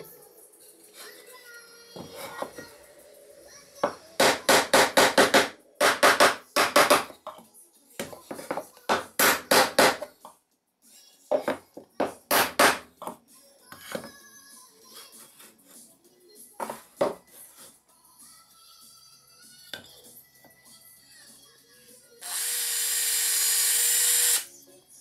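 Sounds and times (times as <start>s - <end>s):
background music: 0.0s - 25.0s
hammer striking wood: 4.2s - 7.1s, 8.9s - 10.1s, 12.3s - 12.9s.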